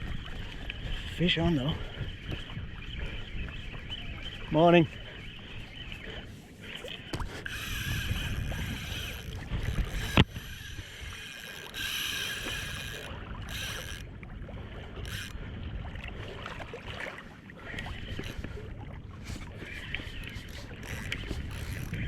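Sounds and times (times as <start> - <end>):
low wind: 0.0 - 22.0
water rumble: 0.0 - 22.0
fishing reel drag whirring: 6.0 - 14.2, 14.8 - 15.4, 17.7 - 18.6, 19.2 - 22.0.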